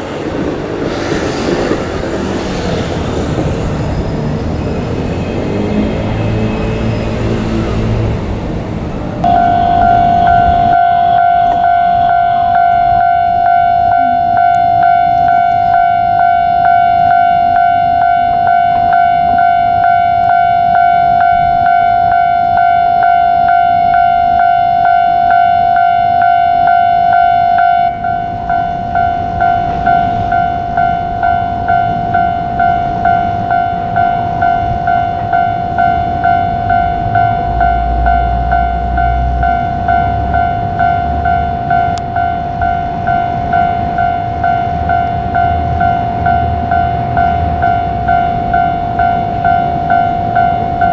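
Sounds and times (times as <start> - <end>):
train rumble: 0.0 - 50.9
level crossing bell dinging: 9.2 - 50.9.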